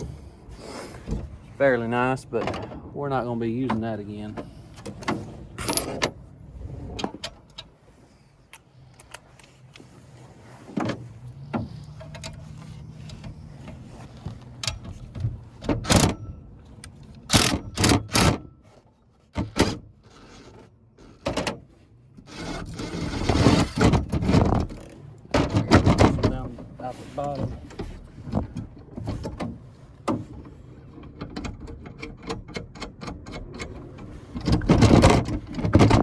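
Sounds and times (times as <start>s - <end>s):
metal tools clanking: 3.6s - 6.1s.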